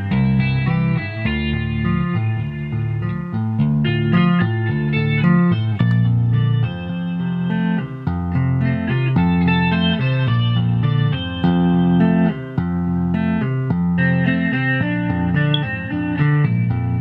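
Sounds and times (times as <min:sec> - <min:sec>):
tapped string instrument: 0:08.0 - 0:17.0.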